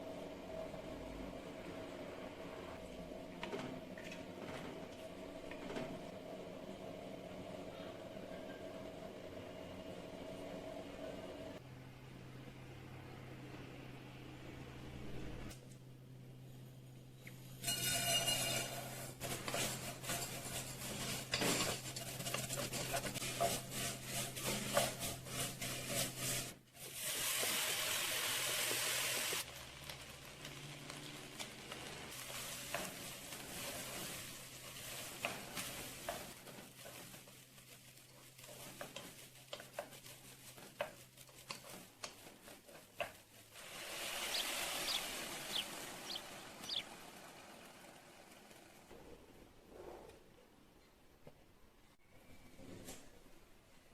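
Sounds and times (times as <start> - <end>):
food sizzling in oil: 26.8 - 36.3, 43.5 - 47.5.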